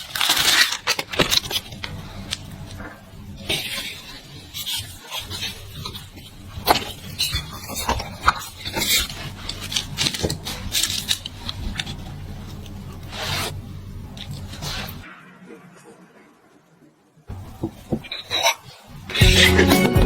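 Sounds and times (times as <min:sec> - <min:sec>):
low steady hum: 0:00.9 - 0:04.6, 0:05.2 - 0:16.0.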